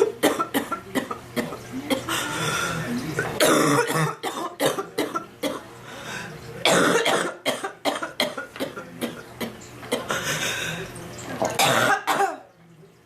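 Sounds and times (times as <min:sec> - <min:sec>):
woman coughing: 0:03.4 - 0:05.6, 0:06.6 - 0:09.2, 0:11.6 - 0:12.4.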